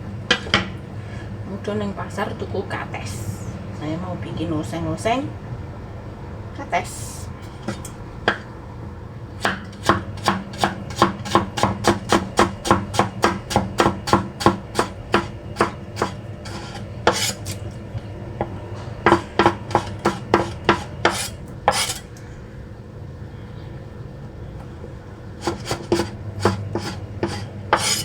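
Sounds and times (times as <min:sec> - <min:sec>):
knife slicing fruit: 0:09.4 - 0:17.6, 0:19.1 - 0:22.0, 0:25.4 - 0:28.0
knife scraping strokes: 0:15.1 - 0:17.8, 0:19.7 - 0:22.1, 0:25.4 - 0:28.0.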